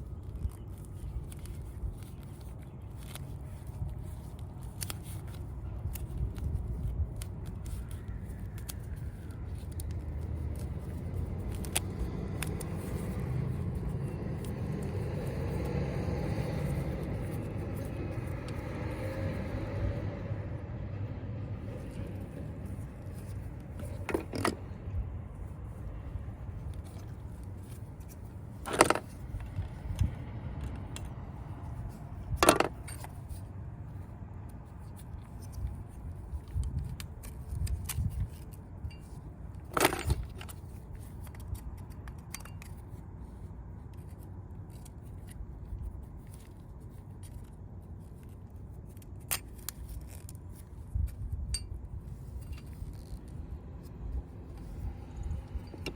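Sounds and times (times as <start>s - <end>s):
metal tools clinking: 32.4s - 33.5s, 38.3s - 40.6s.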